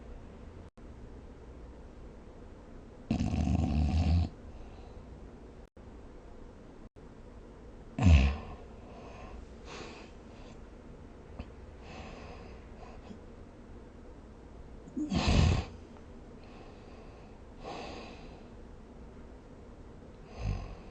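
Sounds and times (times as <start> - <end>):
soft breathing: 4.4 - 5.3, 8.6 - 10.7, 11.4 - 13.3, 16.4 - 18.6
person snoring: 8.0 - 9.9, 15.0 - 15.8, 20.3 - 20.9.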